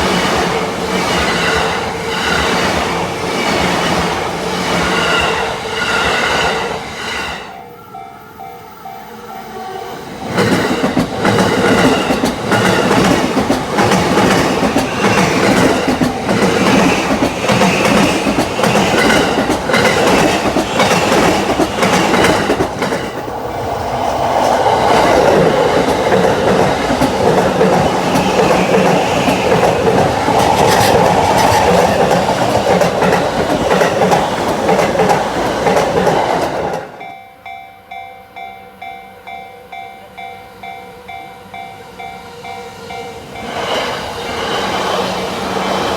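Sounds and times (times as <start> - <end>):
electric train passing: 0.0 - 45.9
wheels clicking over rail joints: 10.3 - 23.4, 24.4 - 37.0.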